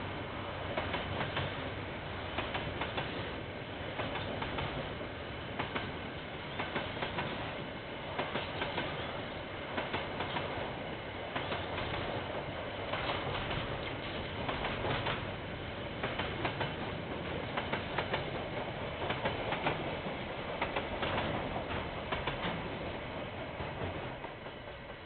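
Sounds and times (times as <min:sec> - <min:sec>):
train wagons rumbling: 0:00.0 - 0:25.0
wheels clacking over rail joints: 0:05.6 - 0:10.7, 0:11.3 - 0:25.0.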